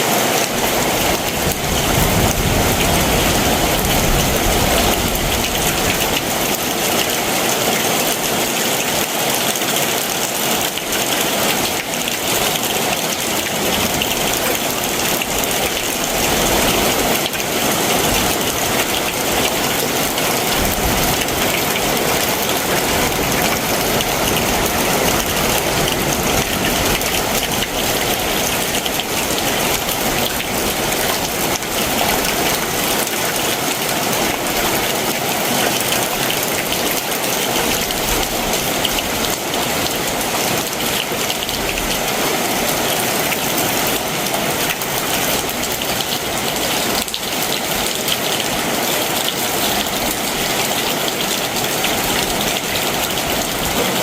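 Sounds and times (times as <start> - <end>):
heavy rain: 0.0 - 54.0.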